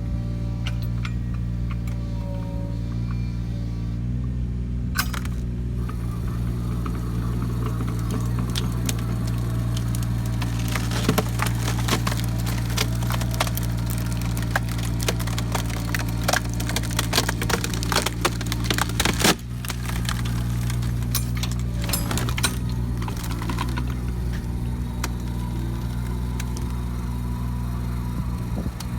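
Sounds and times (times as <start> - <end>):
diesel engine running: 0.0 - 28.9
wood cracking and splintering: 5.0 - 28.9.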